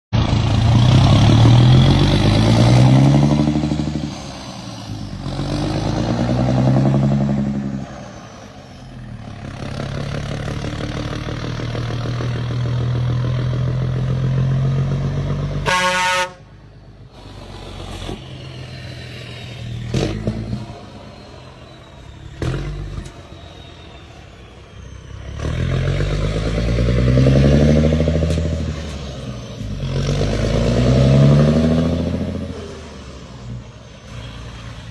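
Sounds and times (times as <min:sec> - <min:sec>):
diesel truck engine revving: 0:00.2 - 0:34.9
truck horn blast: 0:15.6 - 0:16.6.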